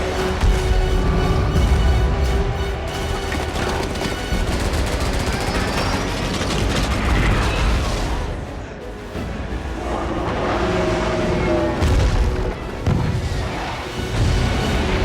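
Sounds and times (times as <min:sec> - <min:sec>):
dramatic score music: 0:00.0 - 0:15.0
rapid gunfire: 0:02.8 - 0:08.3.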